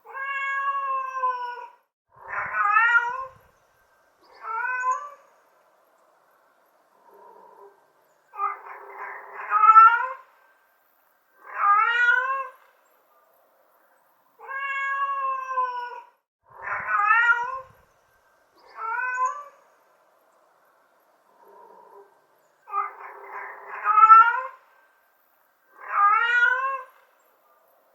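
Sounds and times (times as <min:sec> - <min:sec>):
cat meowing: 0:00.1 - 0:03.4, 0:04.4 - 0:05.2, 0:08.4 - 0:10.2, 0:11.4 - 0:12.6, 0:14.4 - 0:17.8, 0:18.7 - 0:19.6, 0:22.7 - 0:24.6, 0:25.7 - 0:27.0.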